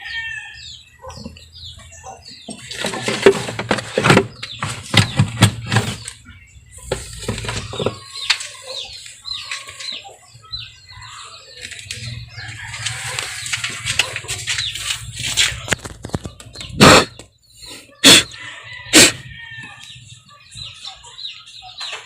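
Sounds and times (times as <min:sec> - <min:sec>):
paper filter rustling: 0:12.6 - 0:16.4.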